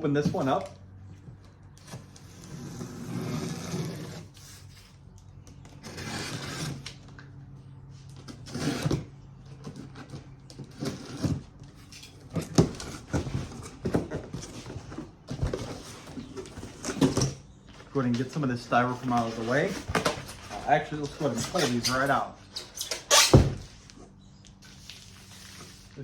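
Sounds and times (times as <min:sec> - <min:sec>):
knocks and rustles of packing: 0:08.0 - 0:25.3
cardboard box rustling: 0:12.3 - 0:22.3.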